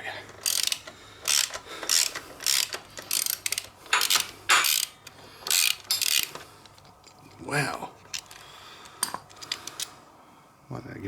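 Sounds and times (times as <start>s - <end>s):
socket ratchet clicking: 0.4s - 6.8s.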